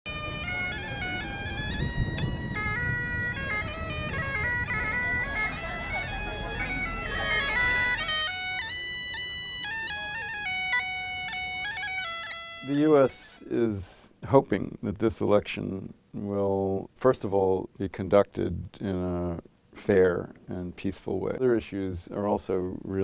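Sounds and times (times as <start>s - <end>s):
melody of held notes: 0.1s - 13.7s.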